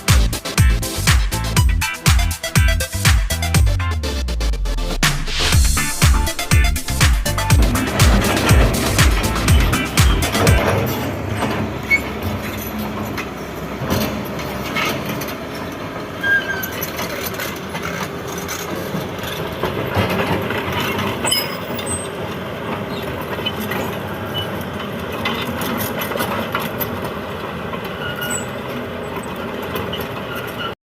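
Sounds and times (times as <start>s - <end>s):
excavator engine din: 0.0s - 30.8s
machinery knocks: 5.0s - 12.4s.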